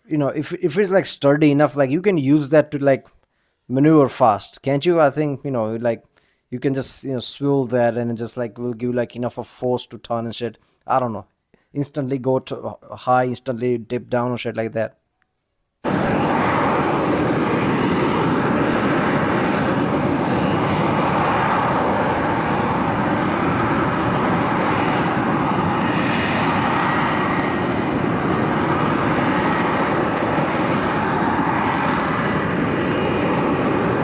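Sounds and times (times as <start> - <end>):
jet engine running: 15.8 - 34.0.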